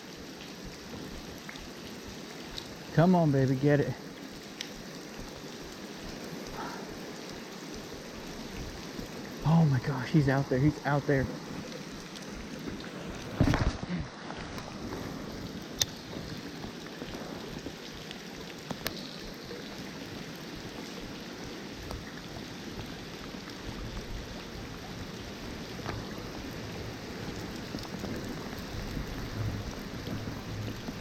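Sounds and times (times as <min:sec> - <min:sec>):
flowing river water: 0:00.0 - 0:31.0
faint clicks: 0:04.6 - 0:04.8.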